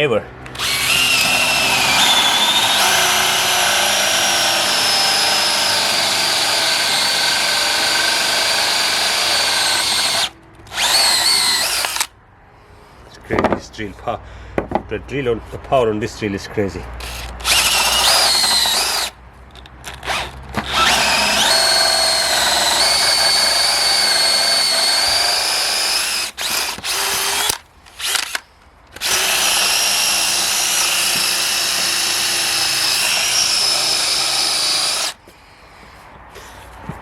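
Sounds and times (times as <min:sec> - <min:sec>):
cordless drill boring into wood: 0:00.5 - 0:12.1, 0:17.0 - 0:19.2, 0:19.9 - 0:28.4, 0:29.0 - 0:35.2.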